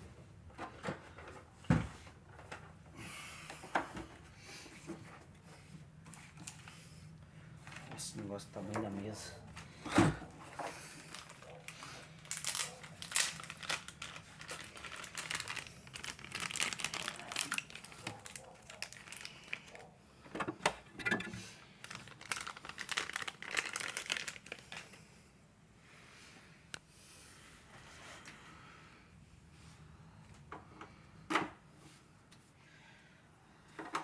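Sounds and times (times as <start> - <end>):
plastic packaging crinkling: 10.6 - 19.8, 21.1 - 25.1.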